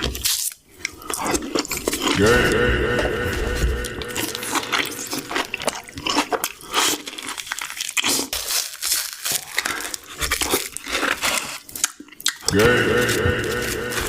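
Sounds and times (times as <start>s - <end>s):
crunchy chewing: 0.0s - 14.0s.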